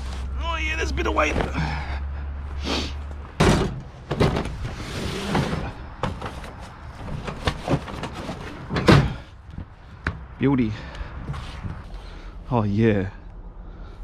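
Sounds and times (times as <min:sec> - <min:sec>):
heavy thud: 0:03.4 - 0:04.7
knocks and scrapes of scrap box: 0:03.4 - 0:09.2.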